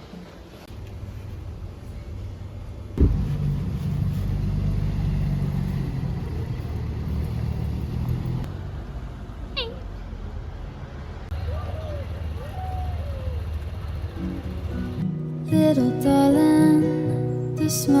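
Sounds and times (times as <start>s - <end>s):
vehicle engine rumbling: 0.0s - 16.8s
sudden thump: 3.0s - 3.4s.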